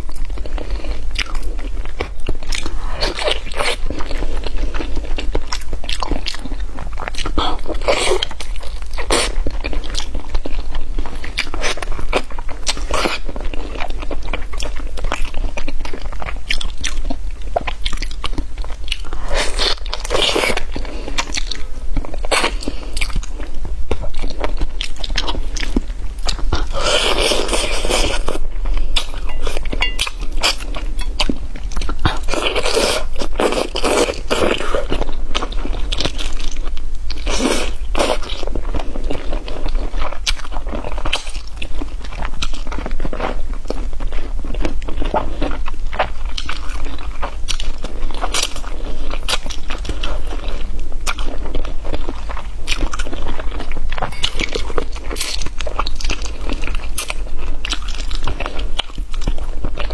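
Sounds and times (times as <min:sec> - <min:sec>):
steady low hum: 0:00.0 - 0:45.3
crunching and chewing food: 0:00.0 - 0:59.9.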